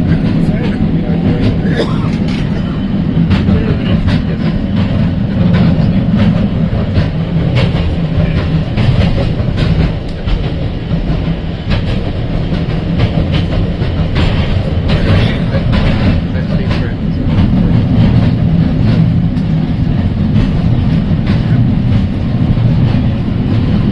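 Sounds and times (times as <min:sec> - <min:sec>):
tram wheels rumbling: 0:00.0 - 0:23.9
wheels clacking over rail joints: 0:00.0 - 0:23.9.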